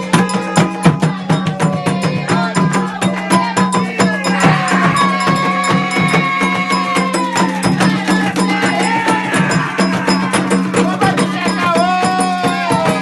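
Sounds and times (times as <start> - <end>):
fast hand percussion: 0.0 - 13.0
sustained voices: 0.0 - 13.0.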